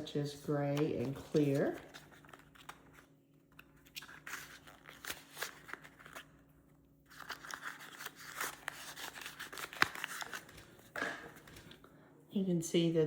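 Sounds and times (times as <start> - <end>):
plastic packaging crinkling: 0.6 - 11.8.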